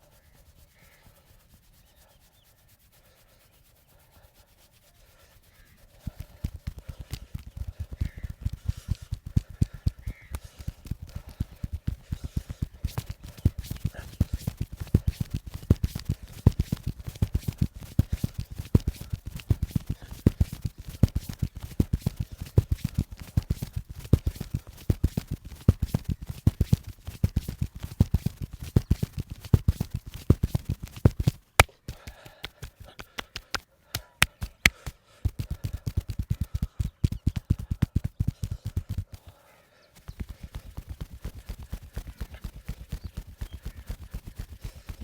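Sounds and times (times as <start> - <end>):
hands beating on body: 6.1 - 39.3, 40.0 - 45.0
sharp slaps: 6.2 - 39.2.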